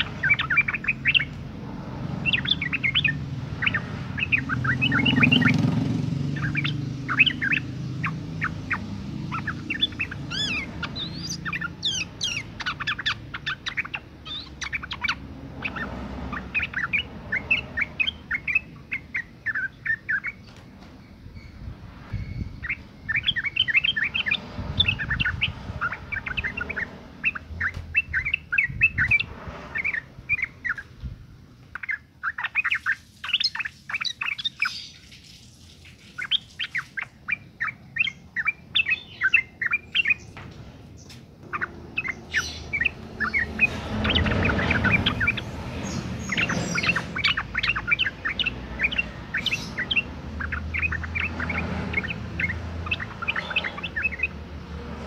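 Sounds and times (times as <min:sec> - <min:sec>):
bird bubbling chirps: 0:02.2 - 0:20.4, 0:41.5 - 0:54.4.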